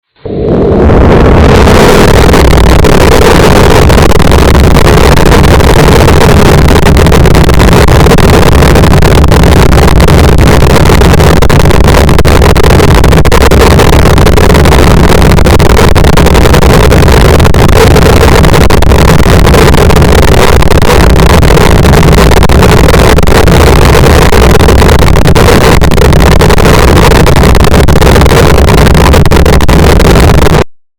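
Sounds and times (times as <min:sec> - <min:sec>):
heavily distorted noise: 0:00.0 - 0:30.9.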